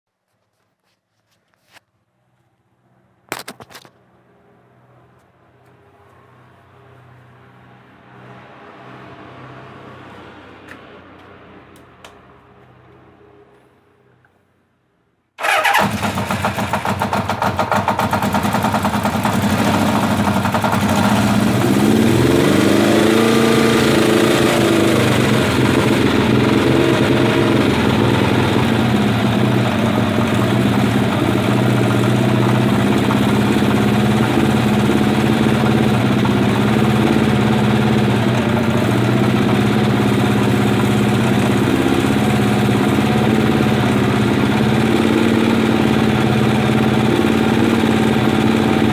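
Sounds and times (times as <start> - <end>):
engine knocking and ticking: 15.4 - 48.9
motorcycle engine revving and idling: 15.4 - 48.9.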